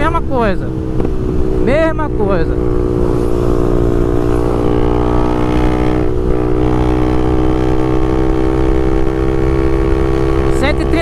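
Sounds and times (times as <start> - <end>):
motorcycle engine running: 2.4 - 11.0.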